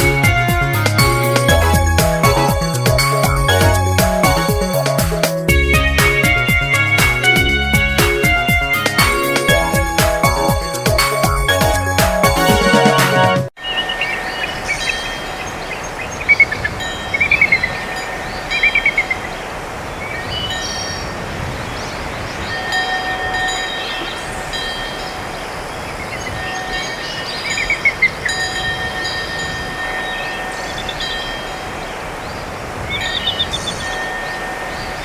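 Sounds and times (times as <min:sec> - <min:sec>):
phone ringtone with chirping trills: 0:13.6 - 0:19.3, 0:22.5 - 0:25.4, 0:33.0 - 0:35.0.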